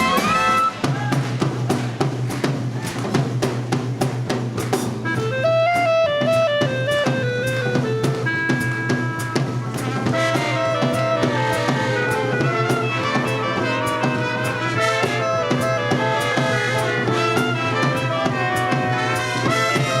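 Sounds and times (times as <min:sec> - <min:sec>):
drum kit beat: 0:00.0 - 0:20.0
brass section holding chords: 0:05.2 - 0:20.0.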